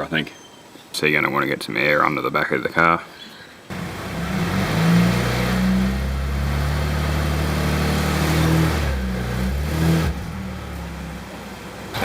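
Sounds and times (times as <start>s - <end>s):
car engine running: 3.7s - 12.0s.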